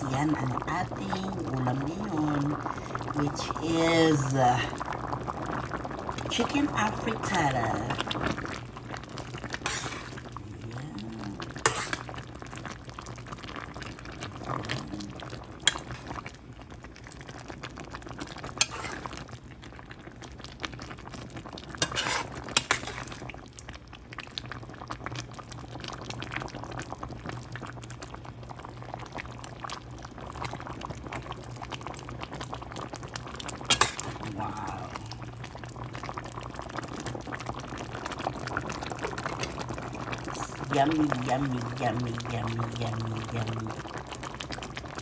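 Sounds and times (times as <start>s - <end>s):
stew simmering and bubbling: 0.0s - 45.0s
metal utensil clinking on pot: 11.7s - 12.0s, 15.7s - 16.0s, 21.8s - 23.1s, 33.7s - 34.2s.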